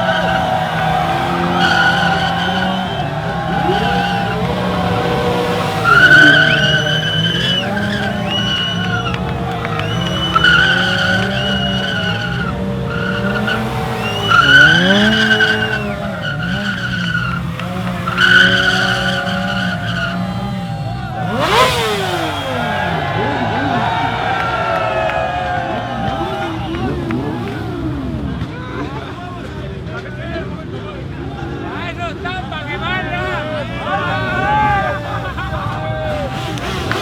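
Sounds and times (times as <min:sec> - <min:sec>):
tyre squealing: 0:00.0 - 0:29.2, 0:31.7 - 0:37.0
motorcycle engine at high revs: 0:00.0 - 0:37.0.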